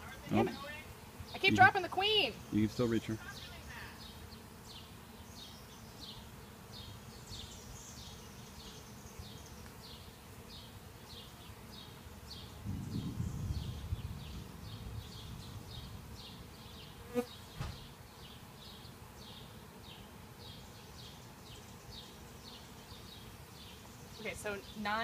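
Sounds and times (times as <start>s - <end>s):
bees buzzing: 0.0s - 25.0s
short sharp knock: 17.5s - 17.8s.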